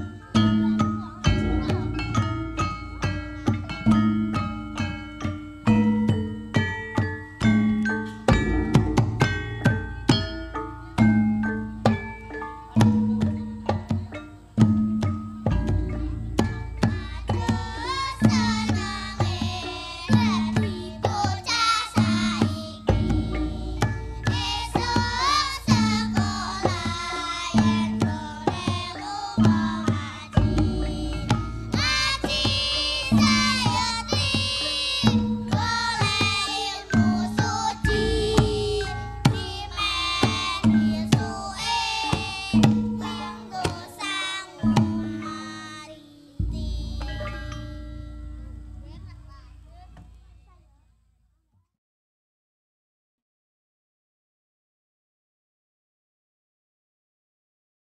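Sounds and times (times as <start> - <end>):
gamelan ensemble playing: 0.0 - 49.8
struck bronze instruments: 0.0 - 50.2
hand drum strokes: 0.0 - 50.3
people singing: 15.9 - 47.8.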